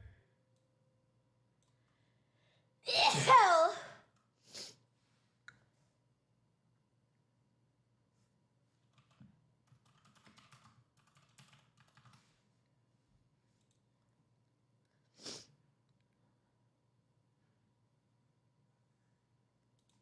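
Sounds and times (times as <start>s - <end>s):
computer keyboard typing: 8.9s - 12.2s.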